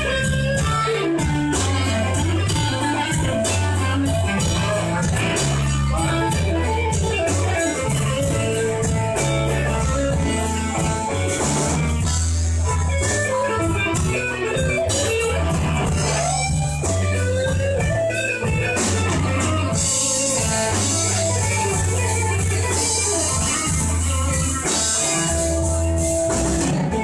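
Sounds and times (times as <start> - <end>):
guitar playing melodic lines: 0.0 - 27.0
slow blues band: 0.0 - 27.0
sustained bass notes: 0.0 - 27.0.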